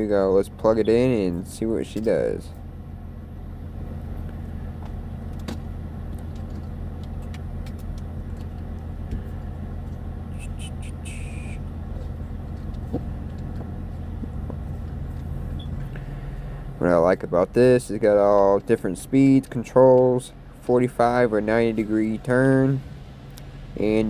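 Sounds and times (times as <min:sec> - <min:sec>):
fan motor hum: 0:00.0 - 0:24.0
high chirps: 0:10.3 - 0:11.7.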